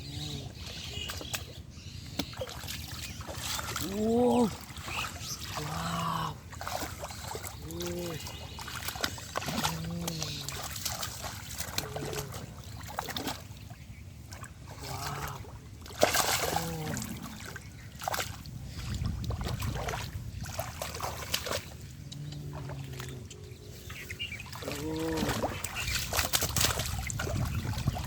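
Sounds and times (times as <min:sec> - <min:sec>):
shallow water splashing: 0:00.1 - 0:28.0
short low calls: 0:03.8 - 0:04.8, 0:05.4 - 0:06.6, 0:07.6 - 0:08.5, 0:09.4 - 0:10.8, 0:16.4 - 0:17.6, 0:24.5 - 0:25.7.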